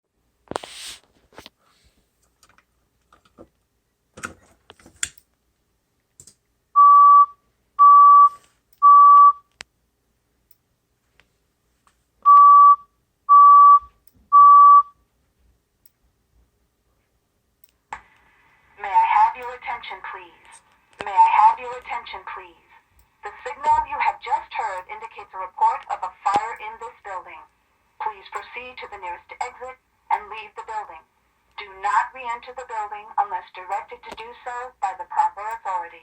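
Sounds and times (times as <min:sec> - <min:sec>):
fire alarm beeps: 0:06.8 - 0:09.5, 0:12.3 - 0:15.0.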